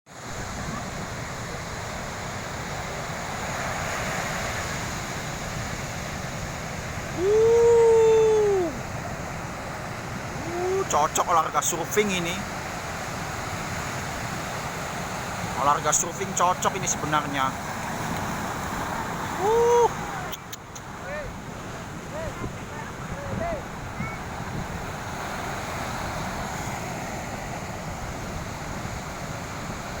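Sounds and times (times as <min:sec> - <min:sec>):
heavy ocean surf: 0:00.1 - 0:30.0
wind rumbling on microphone: 0:17.6 - 0:30.0.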